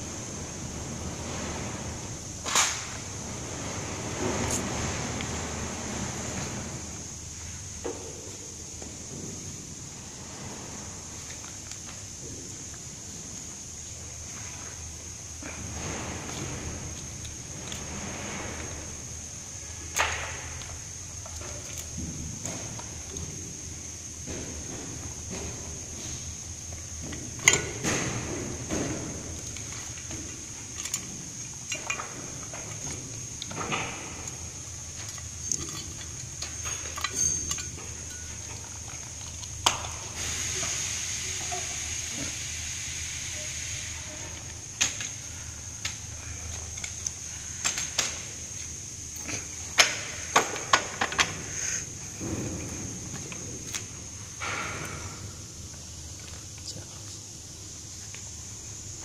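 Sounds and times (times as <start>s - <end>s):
tools and plastic parts clattering: 24.3s - 40.0s, 49.2s - 53.8s.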